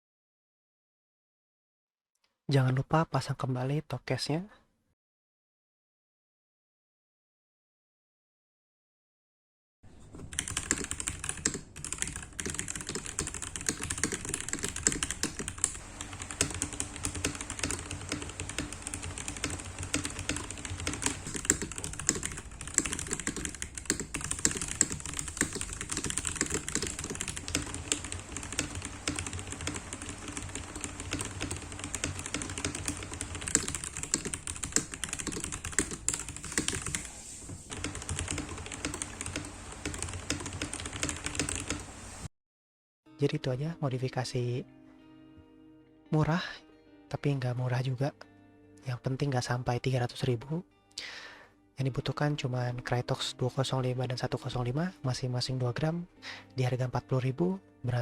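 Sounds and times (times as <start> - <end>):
typing on mechanical keyboard: 10.3 - 37.1, 37.7 - 41.9.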